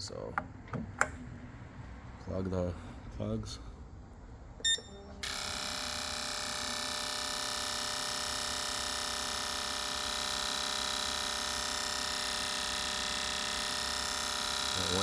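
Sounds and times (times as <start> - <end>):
fast buzzing with high whine: 4.8 - 15.0.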